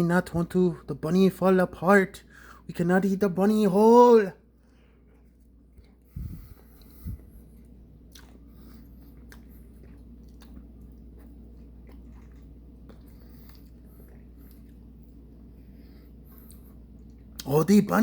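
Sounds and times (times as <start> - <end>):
person chewing sticky food: 4.5 - 17.5.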